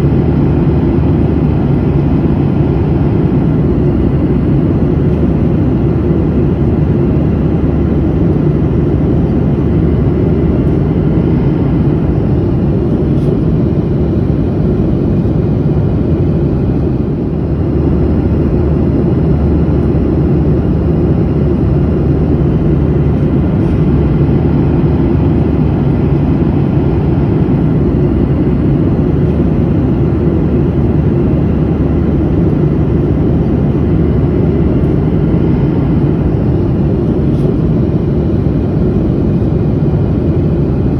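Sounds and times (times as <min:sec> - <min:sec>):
airplane cabin engine rumble: 0:00.0 - 0:40.9.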